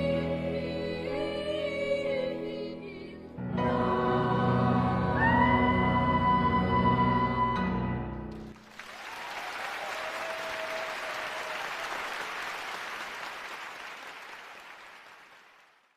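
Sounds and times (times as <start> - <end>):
boys' choir singing chord: 0.0 - 7.2
audience applause: 8.5 - 15.9.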